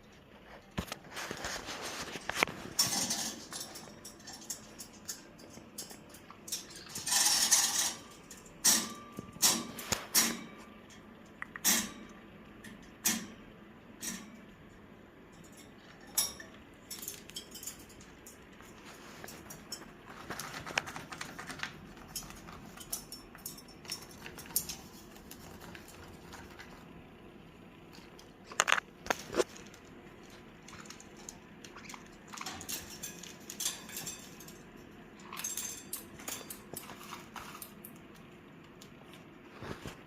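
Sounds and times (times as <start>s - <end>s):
parrot rattling metal: 2.2s - 10.6s, 15.3s - 26.9s, 29.5s - 38.0s.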